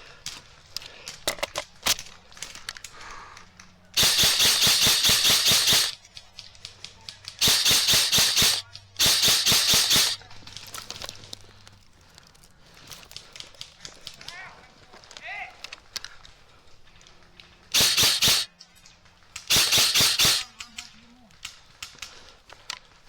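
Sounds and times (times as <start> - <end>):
airsoft gun firing full-auto: 4.0 - 6.2, 7.3 - 10.3, 17.7 - 18.6, 19.4 - 20.9.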